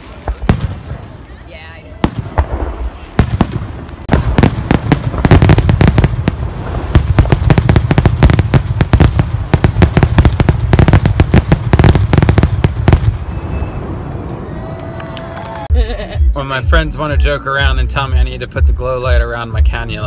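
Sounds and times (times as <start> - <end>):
fireworks bangs and booms: 0.0 - 14.0.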